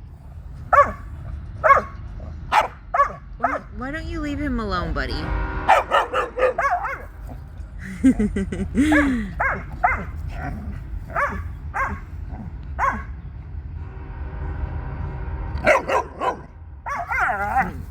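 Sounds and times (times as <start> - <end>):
dogs barking: 0.7 - 3.8, 5.6 - 7.5, 8.1 - 13.2, 15.6 - 17.9.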